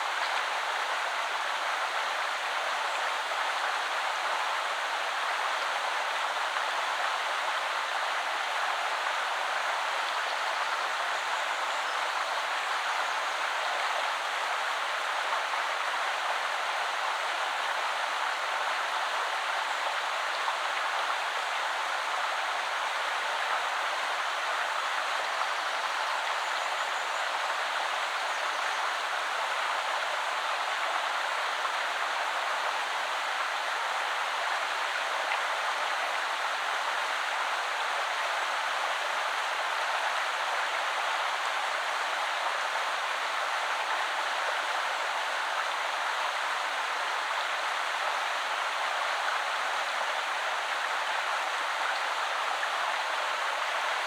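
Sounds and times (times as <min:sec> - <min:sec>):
river flowing over stones: 0:12.3 - 0:54.0.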